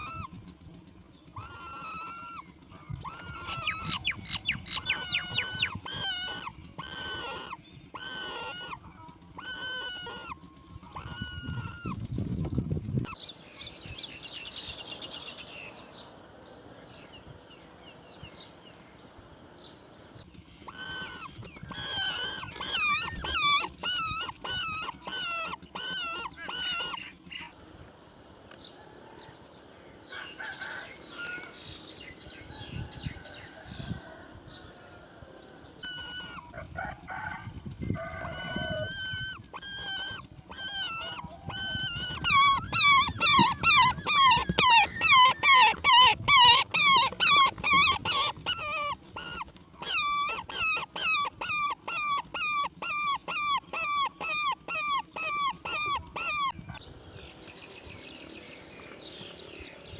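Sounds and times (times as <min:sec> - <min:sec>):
bird nestling begging calls: 0:01.3 - 0:12.1, 0:20.2 - 0:27.5, 0:35.7 - 0:36.5, 0:37.9 - 0:56.9.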